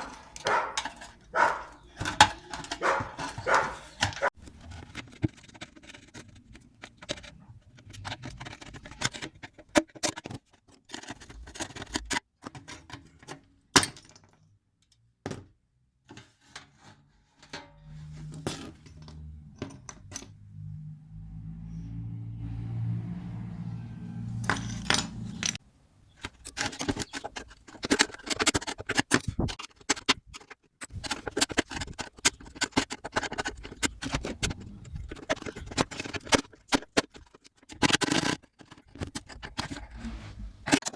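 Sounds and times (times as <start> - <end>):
metal tool box clinks: 0.0 - 4.3, 24.4 - 25.6
low hum: 18.9 - 25.6.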